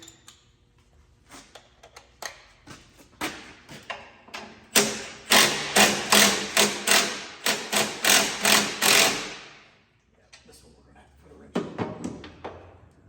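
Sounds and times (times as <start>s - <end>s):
ratchet wrench clicking: 5.3s - 9.4s.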